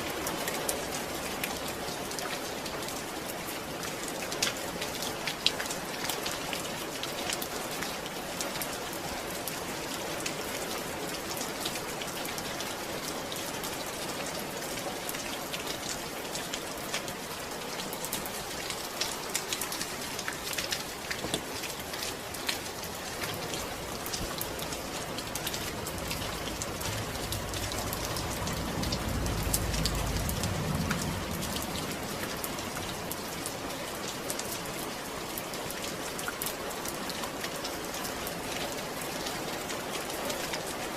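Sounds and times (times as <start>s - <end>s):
steady rain: 0.0s - 40.9s
low rumble: 24.6s - 33.1s.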